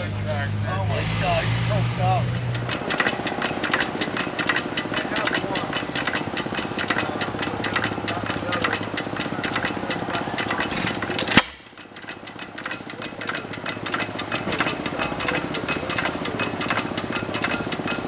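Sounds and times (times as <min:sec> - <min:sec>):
engine clattering rhythmically: 0:00.0 - 0:18.0
sharp bang: 0:00.6 - 0:04.6.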